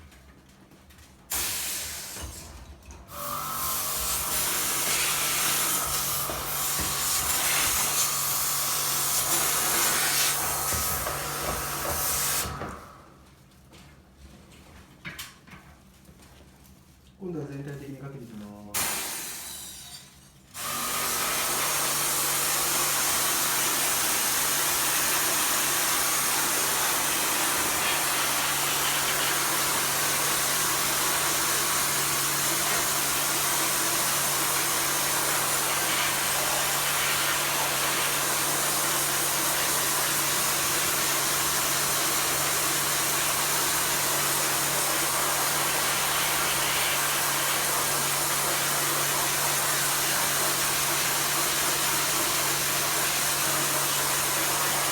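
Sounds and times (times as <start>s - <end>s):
pump motor humming: 3.1s - 12.9s, 20.6s - 54.9s.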